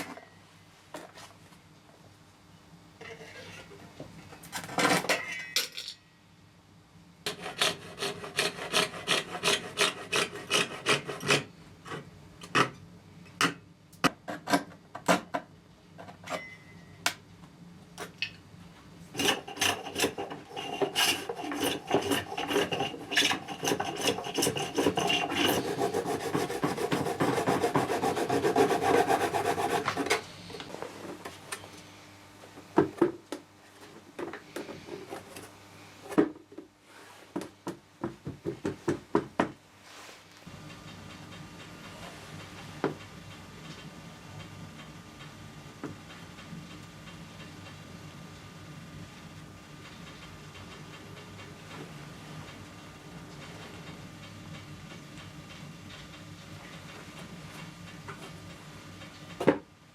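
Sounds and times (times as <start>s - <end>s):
file rasping on a workpiece: 7.3s - 11.5s, 19.2s - 30.1s.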